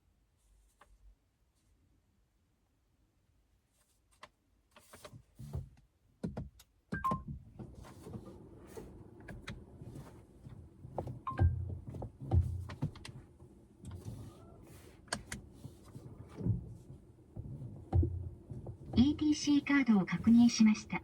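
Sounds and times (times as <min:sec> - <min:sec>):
car controls clicking: 0:09.2 - 0:13.2, 0:13.8 - 0:21.0
dull thuds: 0:10.9 - 0:13.3, 0:15.4 - 0:20.5.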